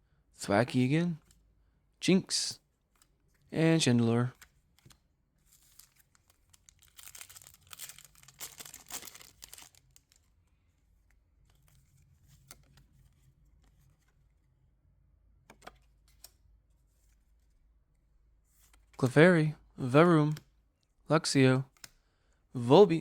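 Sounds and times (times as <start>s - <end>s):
soft clicks of cards: 4.4s - 6.7s, 15.5s - 16.4s, 20.2s - 20.9s, 21.7s - 22.0s
foil wrapper tearing and crinkling: 5.6s - 10.2s.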